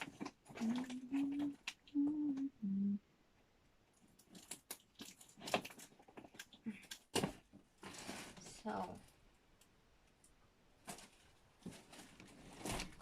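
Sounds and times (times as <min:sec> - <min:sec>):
cardboard package clicks and rustles: 0:00.0 - 0:02.0, 0:04.0 - 0:09.0, 0:10.8 - 0:13.0.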